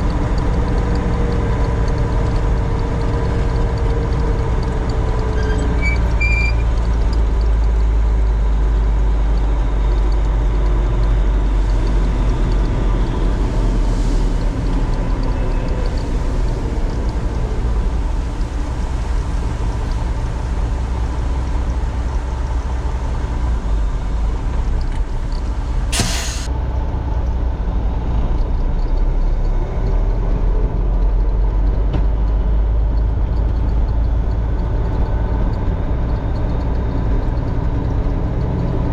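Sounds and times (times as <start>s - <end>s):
diesel engine rumbling: 0.0s - 38.9s
air hiss: 25.9s - 26.5s.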